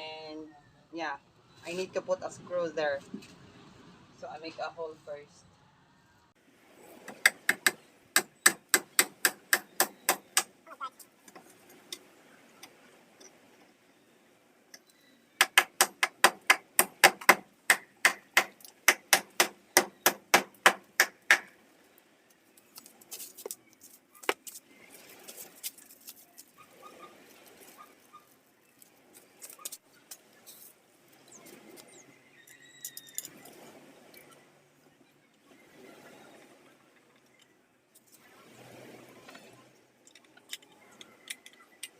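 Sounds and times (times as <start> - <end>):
hammer striking nail: 7.2 - 10.5, 15.4 - 21.5.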